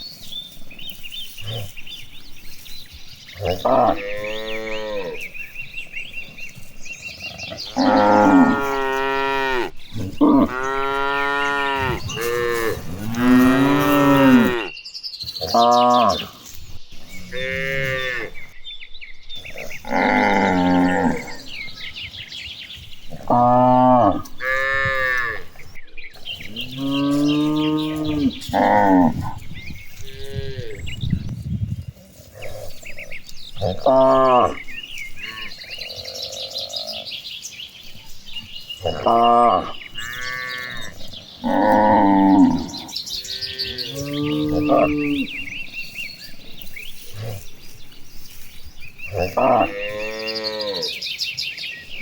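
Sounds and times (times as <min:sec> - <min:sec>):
cattle mooing: 0:03.4 - 0:05.3, 0:07.5 - 0:14.7, 0:17.3 - 0:18.4, 0:19.8 - 0:21.6, 0:33.6 - 0:34.6, 0:38.8 - 0:45.6, 0:49.1 - 0:51.0.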